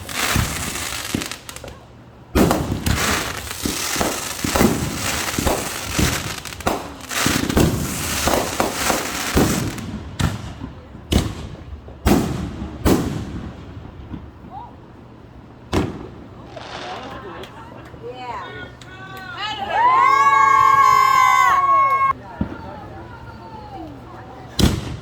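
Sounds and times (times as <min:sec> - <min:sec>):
fireworks booms: 0:00.0 - 0:14.7, 0:15.7 - 0:17.5, 0:24.6 - 0:25.0
fireworks bangs and crackling: 0:00.0 - 0:17.7, 0:22.2 - 0:25.0.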